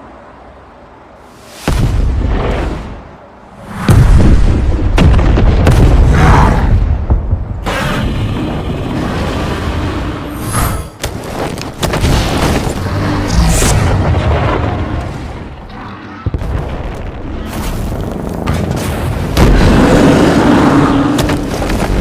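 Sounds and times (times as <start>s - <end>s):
heavy booms and crashing impacts: 3.8s - 8.7s, 11.8s - 15.6s
deep rumble: 12.0s - 22.0s.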